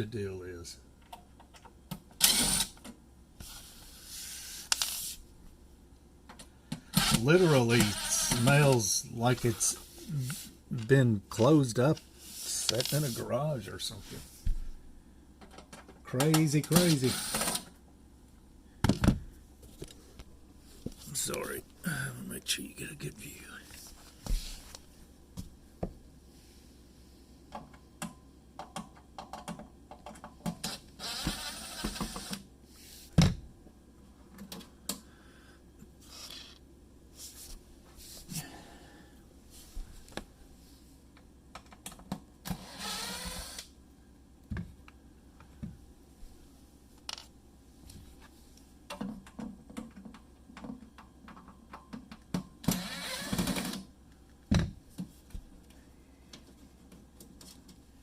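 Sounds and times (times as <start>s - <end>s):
tools clicking and tapping on panel: 27.5s - 30.6s.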